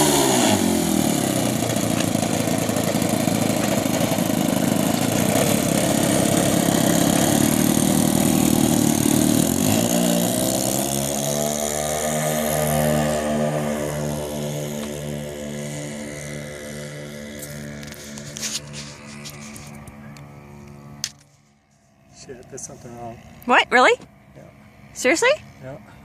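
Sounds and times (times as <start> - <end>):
model airplane engines droning: 0.0 - 26.0.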